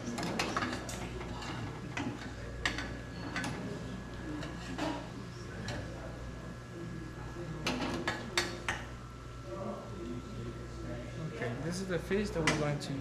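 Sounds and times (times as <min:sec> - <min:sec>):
steady low hum: 0:00.0 - 0:13.0
kitchen utensils clicking and knocking: 0:00.1 - 0:03.6.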